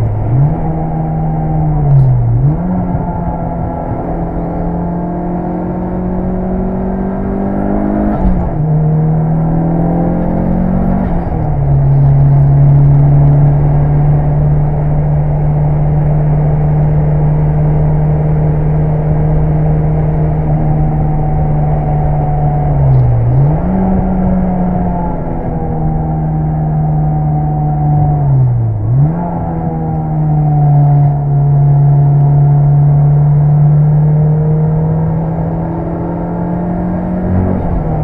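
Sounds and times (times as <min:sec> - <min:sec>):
car engine revving high: 0:00.0 - 0:38.0.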